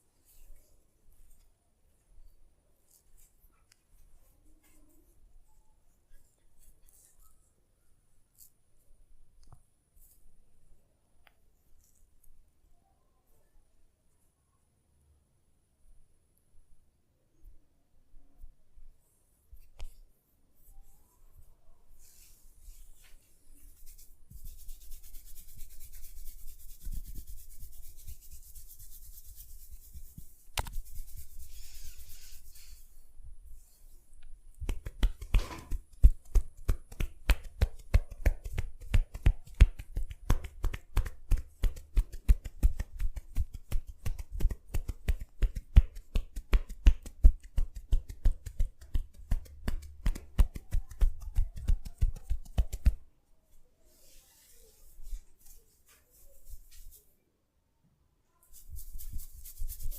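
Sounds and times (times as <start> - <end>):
hands rubbing hair and scalp: 0.0 - 1.5, 2.2 - 5.2, 6.1 - 7.5, 22.0 - 53.0, 53.9 - 57.2, 58.4 - 59.9
rhythmic slaps on head: 34.6 - 53.0.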